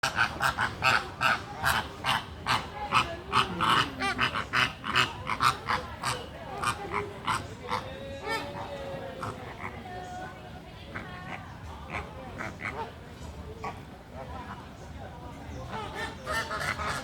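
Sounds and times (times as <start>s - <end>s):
flamingo honking calls: 0.0s - 9.8s, 15.7s - 17.0s.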